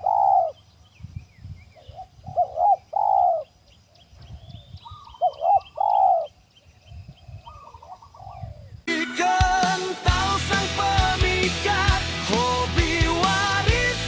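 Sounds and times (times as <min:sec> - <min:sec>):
small birds chirping: 0:00.0 - 0:08.8
dove cooing: 0:01.9 - 0:03.4.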